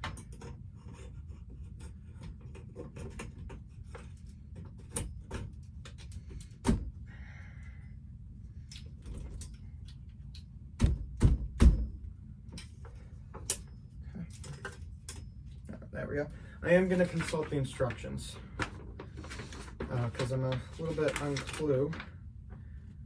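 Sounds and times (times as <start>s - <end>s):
clicks and knocks of parts: 0.0s - 6.8s, 12.5s - 15.6s
steady low hum: 0.0s - 23.0s.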